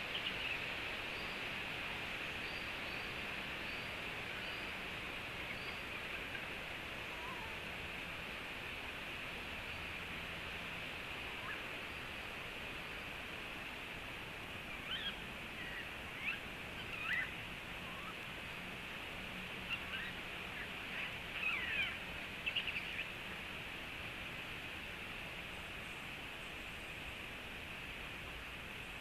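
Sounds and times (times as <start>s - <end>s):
steady hiss: 0.0s - 29.0s.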